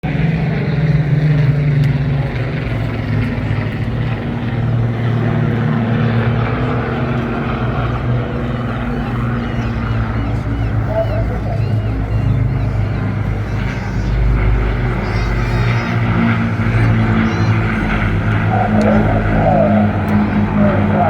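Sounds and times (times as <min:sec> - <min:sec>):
propeller aircraft engine drone: 0:00.0 - 0:21.0.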